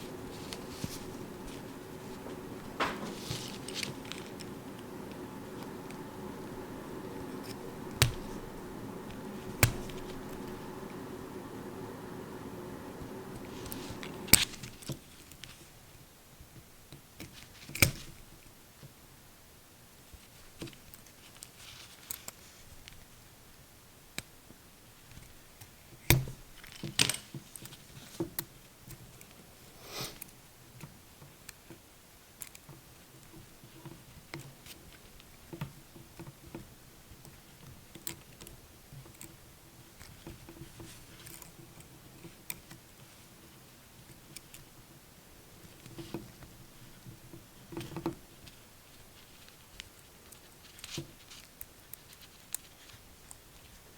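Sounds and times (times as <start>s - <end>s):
cable wires clicking and snipping: 0.0s - 15.0s.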